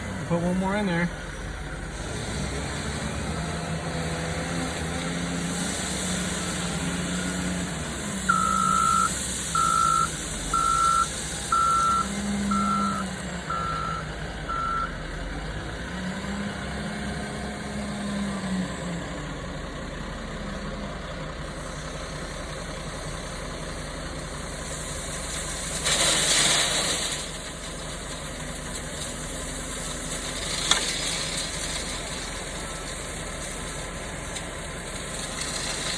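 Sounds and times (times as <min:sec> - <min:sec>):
excavator engine running: 0:00.0 - 0:35.9
backup alarm beeping: 0:08.3 - 0:15.0.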